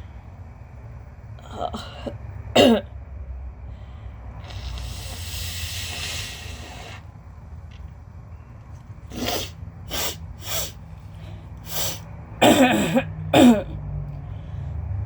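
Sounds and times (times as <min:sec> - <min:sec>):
woman coughing: 0:01.5 - 0:02.9, 0:12.4 - 0:13.8.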